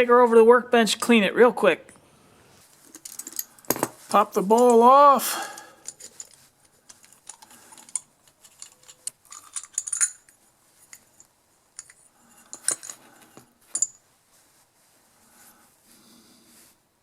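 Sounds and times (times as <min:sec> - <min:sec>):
small metal clicks and clinks: 0:02.8 - 0:04.8, 0:05.8 - 0:14.0.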